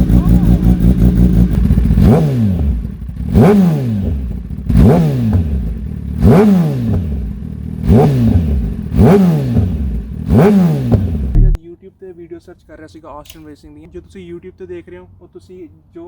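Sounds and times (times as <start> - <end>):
motorcycle engine revving: 0.0 - 11.6.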